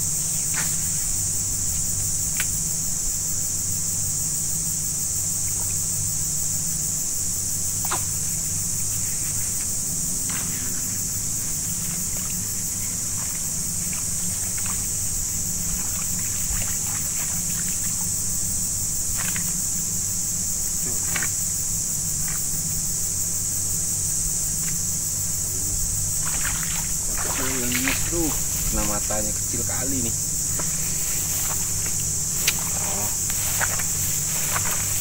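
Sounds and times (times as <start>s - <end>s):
insects chorus: 0.0s - 35.0s
low steady hum: 0.0s - 35.0s
water splashes: 9.1s - 18.3s, 26.2s - 30.1s.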